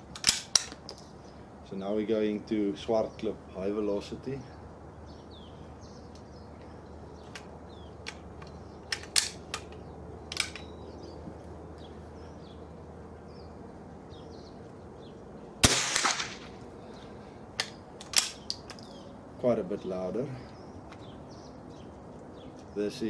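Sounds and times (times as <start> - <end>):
birds chirping faintly: 0.0 - 23.0
rifle shot with echo: 15.6 - 16.6.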